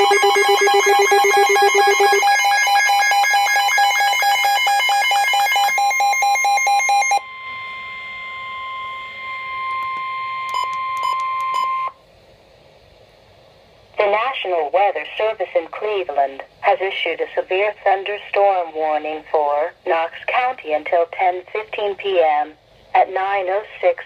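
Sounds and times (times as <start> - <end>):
pulsing electronic alarm: 0.0 - 11.9
steady single alarm tone: 0.0 - 11.9.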